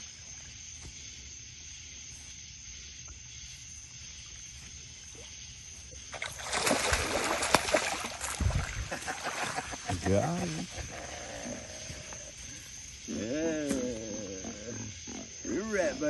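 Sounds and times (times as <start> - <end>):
fish splashing in water: 6.0 - 10.1.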